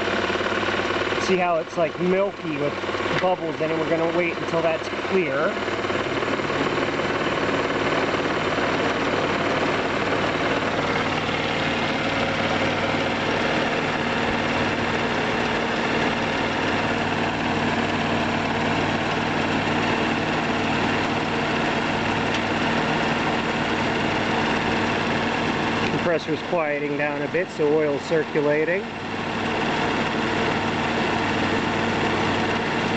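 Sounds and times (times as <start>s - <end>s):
air conditioning compressor running: 0.0s - 32.9s
car engine idling: 0.0s - 32.9s.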